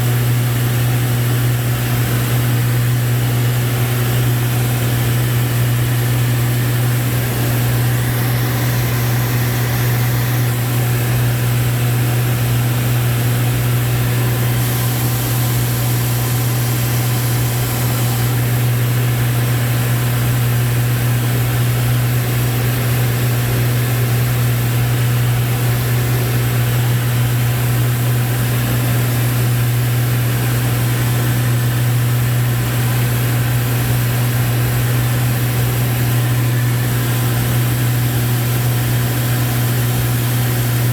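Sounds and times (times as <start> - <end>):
aircraft engine and propeller drone: 0.0 - 40.9
rush of airflow: 6.8 - 18.8.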